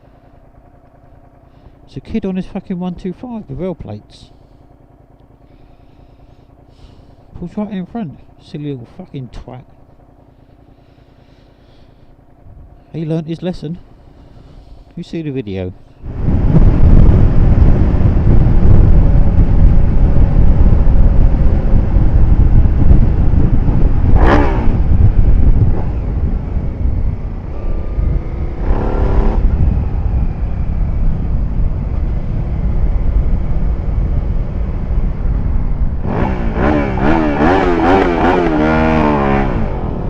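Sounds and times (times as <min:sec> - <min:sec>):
motorcycle engine running: 0:00.0 - 0:40.0
heavy wind noise: 0:16.0 - 0:40.0.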